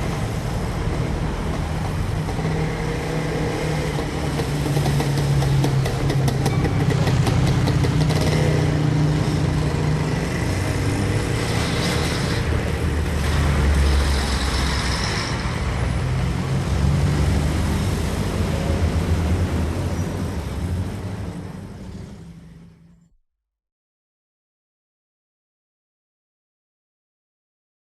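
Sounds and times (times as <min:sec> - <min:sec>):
vehicle engines passing: 0:00.0 - 0:23.0
road noise: 0:00.0 - 0:23.1.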